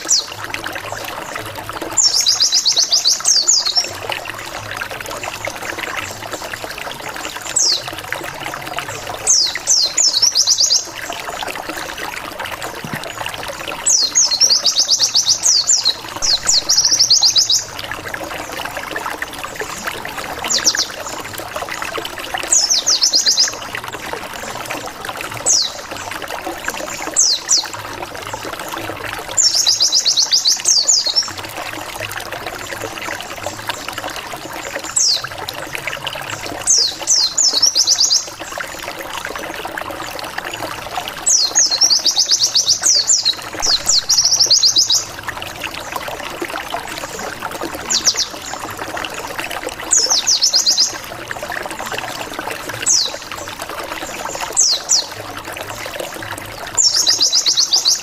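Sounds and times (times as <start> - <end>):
white-eye bird calling: 13.9 - 17.8, 41.3 - 45.1.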